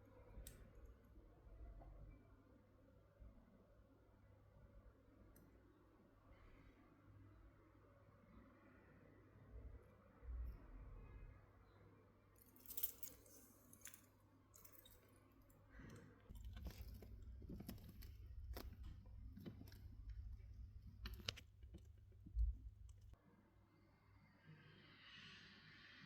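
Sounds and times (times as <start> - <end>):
handling clicks and rustles: 12.6 - 23.2.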